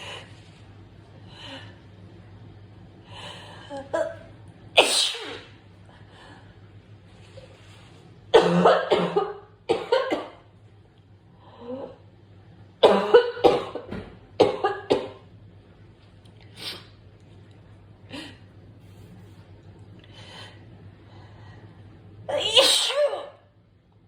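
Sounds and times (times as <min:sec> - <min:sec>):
person coughing: 0:08.4 - 0:10.4, 0:12.8 - 0:15.2.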